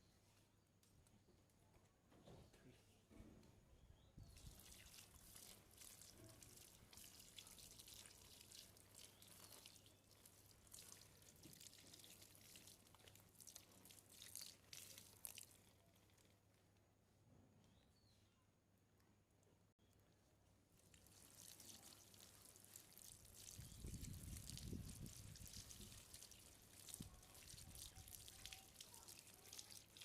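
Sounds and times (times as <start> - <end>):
water dripping and splashing: 4.3 - 16.5, 20.8 - 30.0.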